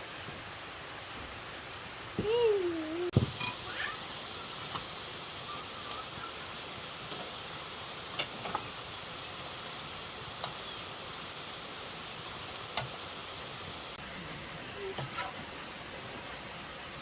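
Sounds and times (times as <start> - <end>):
insects droning: 0.0 - 17.0
steady hiss: 0.0 - 17.0.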